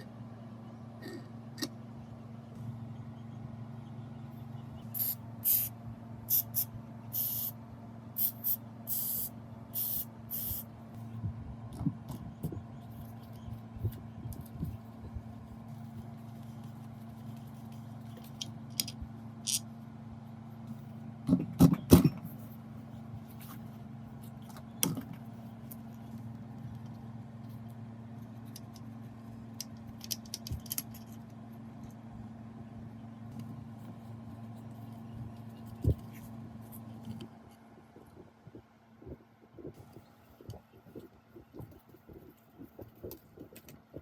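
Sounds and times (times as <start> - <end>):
steady low hum: 0.0 - 44.0
metal parts clinking and knocking: 30.0 - 31.1.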